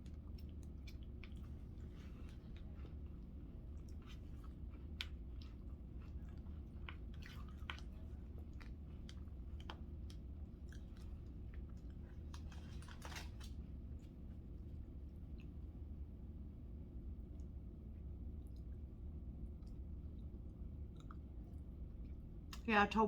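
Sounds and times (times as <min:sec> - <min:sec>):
crackers crunching: 0:00.0 - 0:14.2
steady low hum: 0:00.0 - 0:23.0.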